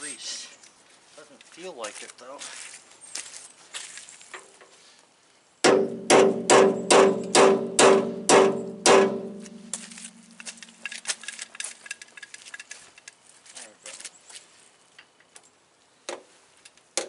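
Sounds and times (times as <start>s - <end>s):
metal-on-metal strikes ringing: 5.6s - 10.5s.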